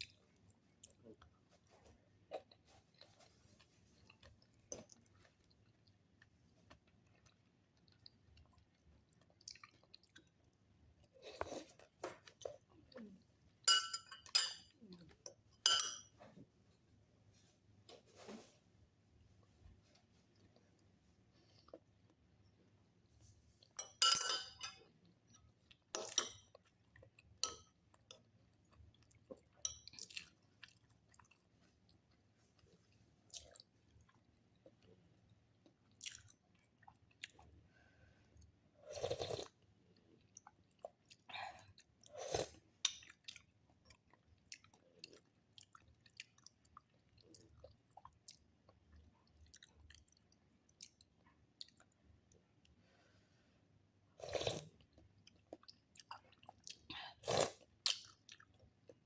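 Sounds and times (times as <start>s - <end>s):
person chewing crunchy food: 38.9s - 51.9s, 54.2s - 59.0s.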